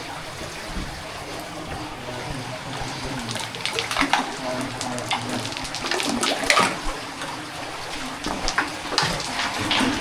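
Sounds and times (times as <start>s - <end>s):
water splashing and trickling: 0.0s - 10.0s
sharp water splashes: 2.7s - 10.0s.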